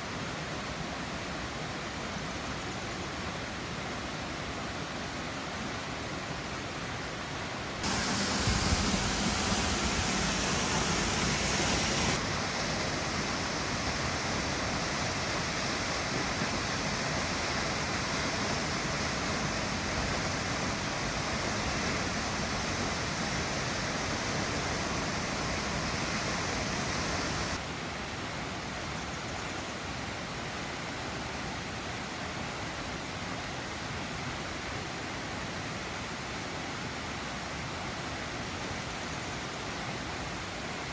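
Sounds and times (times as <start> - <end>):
waterfall rushing: 7.8 - 14.1, 15.2 - 27.6.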